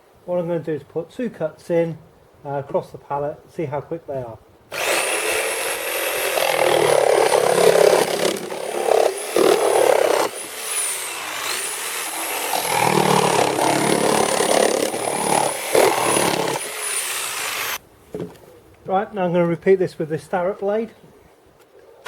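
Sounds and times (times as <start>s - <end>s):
jigsaw cutting wood: 4.7s - 17.8s.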